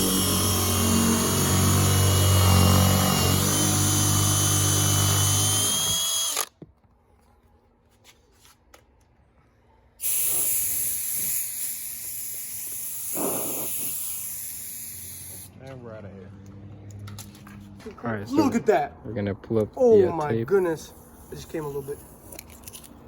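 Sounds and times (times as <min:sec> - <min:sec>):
power drill whining: 0:00.0 - 0:06.6.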